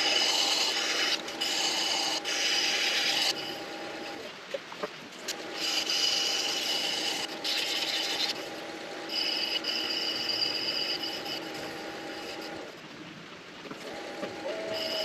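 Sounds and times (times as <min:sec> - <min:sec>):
rubbing and squealing on spinning wood: 0:00.0 - 0:04.2, 0:05.2 - 0:12.7, 0:14.3 - 0:15.0
lathe motor hum: 0:00.0 - 0:04.3, 0:05.2 - 0:12.7.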